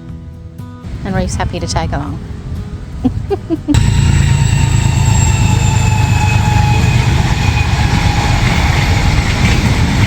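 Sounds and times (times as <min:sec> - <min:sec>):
low engine and road rumble: 0:00.9 - 0:10.0.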